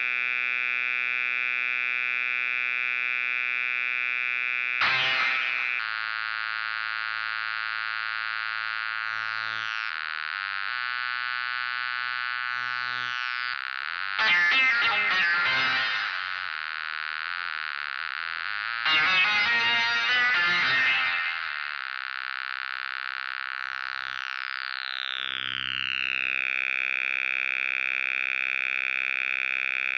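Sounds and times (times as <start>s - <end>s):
buzzy synthesizer note: 4.8s - 6.1s, 14.2s - 16.6s, 18.8s - 22.1s
synthesizer chords: 18.9s - 21.7s
falling synth sweep: 18.9s - 21.8s.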